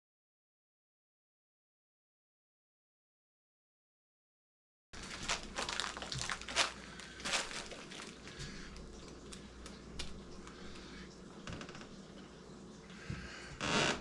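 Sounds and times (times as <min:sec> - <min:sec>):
bags crinkling and rustling: 0:05.0 - 0:10.8.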